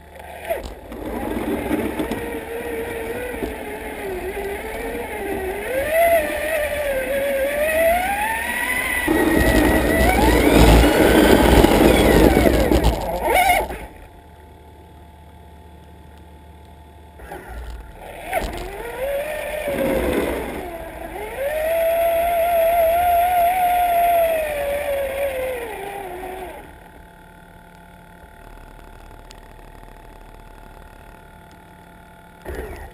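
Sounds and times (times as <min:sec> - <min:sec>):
loud rough noise: 0:00.0 - 0:14.1, 0:17.2 - 0:27.0
electric toy truck motor whining: 0:00.0 - 0:14.2, 0:17.2 - 0:27.0.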